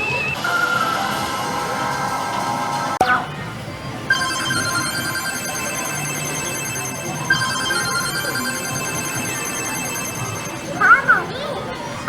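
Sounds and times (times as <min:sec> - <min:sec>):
steady high electronic tones: 0:04.1 - 0:11.1.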